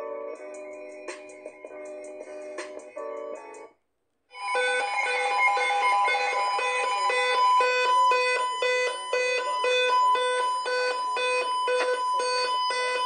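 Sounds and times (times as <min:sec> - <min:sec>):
electronic alarm beeping: 0:04.4 - 0:13.0.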